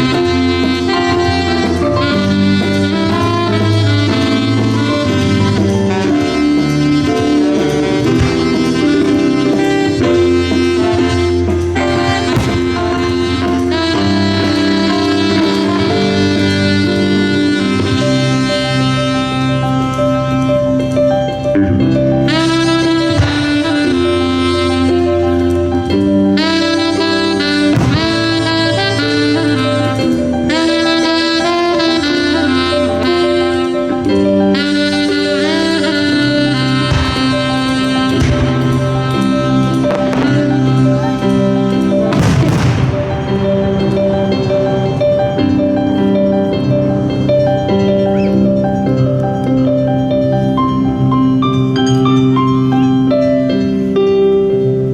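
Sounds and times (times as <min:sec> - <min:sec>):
drums: 0:00.0 - 0:20.0, 0:21.8 - 0:46.3
bass line: 0:00.0 - 0:53.1
horn melody: 0:00.0 - 0:54.9
jazz band playing: 0:00.0 - 0:54.9
sharp bang: 0:10.9 - 0:15.6, 0:39.9 - 0:45.0.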